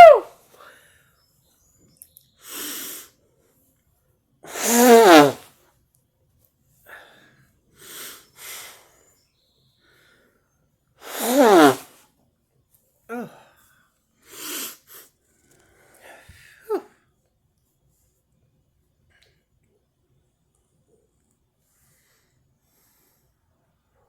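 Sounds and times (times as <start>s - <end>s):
woman sneezing: 0.0s - 0.3s, 4.5s - 5.4s, 11.0s - 11.9s
breaths and sniffs: 2.4s - 3.2s, 4.5s - 5.5s, 6.9s - 9.2s, 11.0s - 12.0s, 13.3s - 16.7s.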